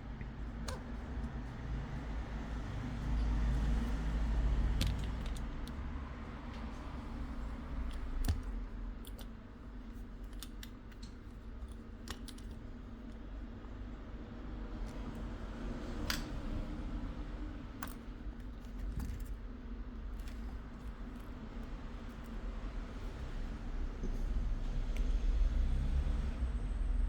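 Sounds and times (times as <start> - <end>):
small tools clicking and tapping: 4.7 - 5.8, 7.8 - 9.4, 10.0 - 12.6.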